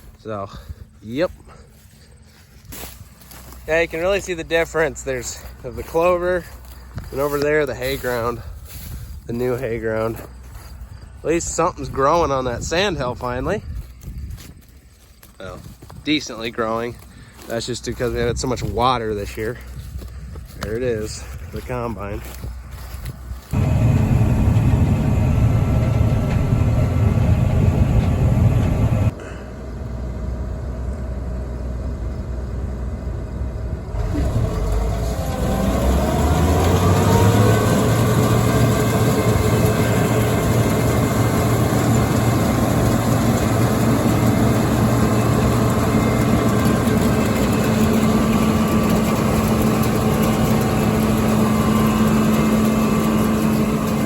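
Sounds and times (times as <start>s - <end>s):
heavy machinery engines running: 0.0s - 54.0s
engine revving with whine: 23.4s - 54.0s.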